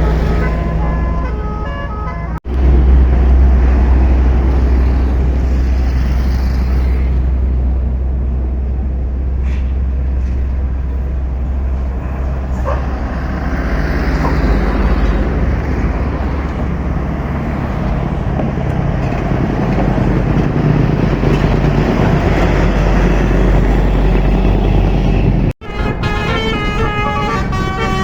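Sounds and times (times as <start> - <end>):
bus horn tune: 0.0 - 2.4, 24.6 - 28.0
bus diesel engine rumbling: 0.0 - 28.0
traffic noise: 0.0 - 28.0.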